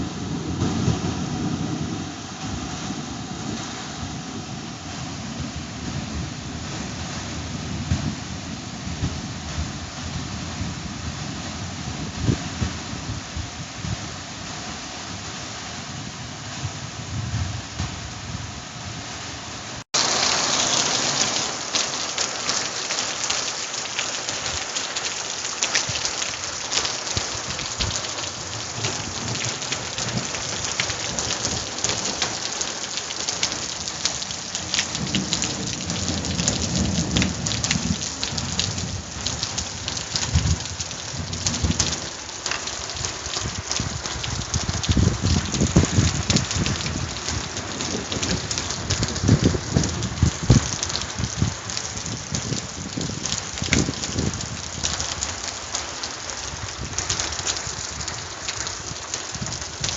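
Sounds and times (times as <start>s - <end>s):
thunder rumbling: 0.0s - 12.8s, 25.8s - 42.2s, 42.8s - 55.5s
heavy rain on hard surfaces: 0.0s - 59.9s.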